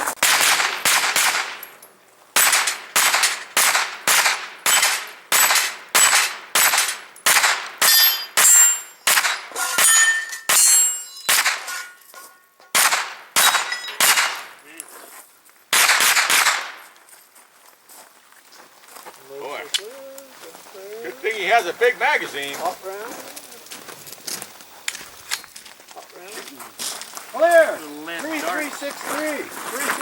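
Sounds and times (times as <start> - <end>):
rapid gunshots: 0.2 - 1.6, 2.4 - 9.5, 12.8 - 14.5, 15.7 - 16.8
steel targets ringing: 4.6 - 14.2.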